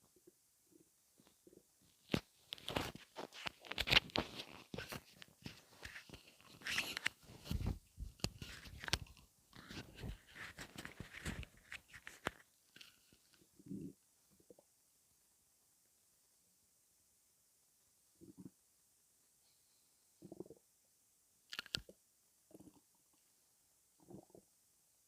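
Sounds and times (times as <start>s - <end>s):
stomach gurgling: 13.4s - 14.7s, 18.2s - 18.6s, 20.2s - 20.7s, 22.5s - 23.1s, 24.0s - 24.6s.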